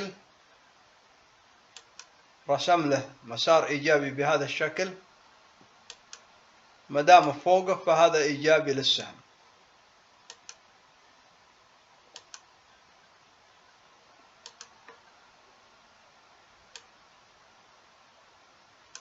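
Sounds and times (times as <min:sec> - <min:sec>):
faint computer mouse clicks: 0:10.3 - 0:10.6, 0:12.1 - 0:12.5, 0:14.4 - 0:15.0.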